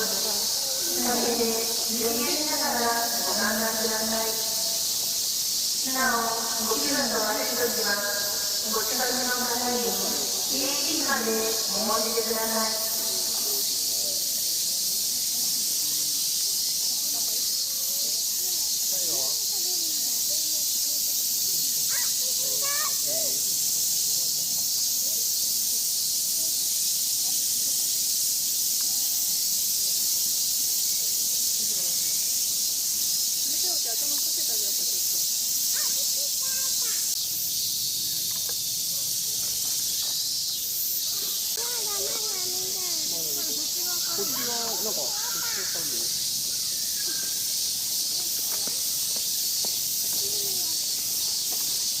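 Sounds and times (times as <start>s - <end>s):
distant voices: 0.0s - 16.2s
cicada chorus: 0.0s - 52.0s
faint distant voices: 0.0s - 52.0s.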